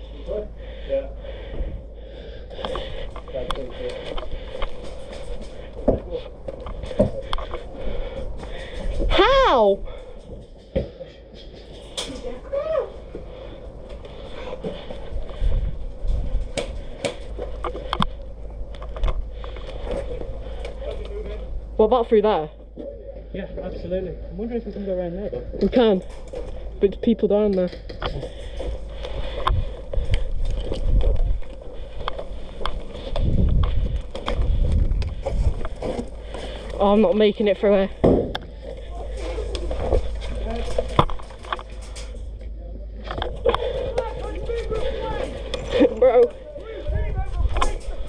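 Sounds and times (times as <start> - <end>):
low rumble on microphone: 12.2 - 21.8, 28.0 - 48.0
wind rumble on camera: 15.2 - 17.0, 29.4 - 31.6, 33.0 - 35.8.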